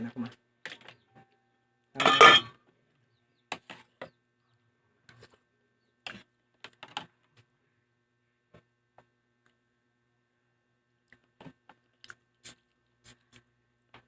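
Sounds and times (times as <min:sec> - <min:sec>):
tableware clattering: 0:02.0 - 0:02.5.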